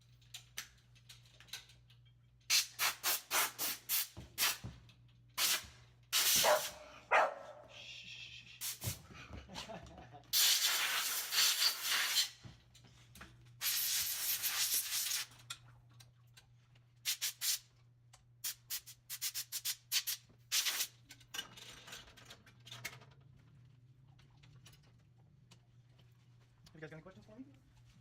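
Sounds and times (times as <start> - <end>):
pressurised spray hissing: 2.5 - 4.6, 5.4 - 6.8, 8.6 - 9.0, 10.3 - 12.4, 13.6 - 15.2.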